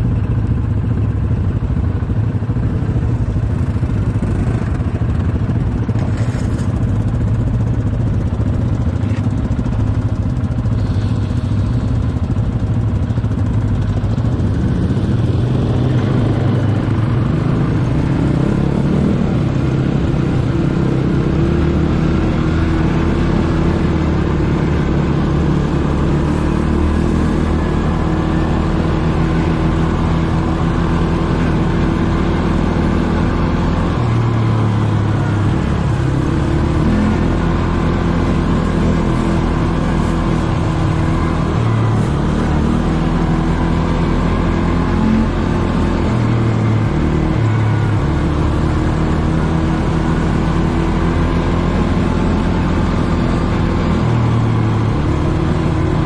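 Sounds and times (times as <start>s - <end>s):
quad engine running: 0.0s - 56.0s.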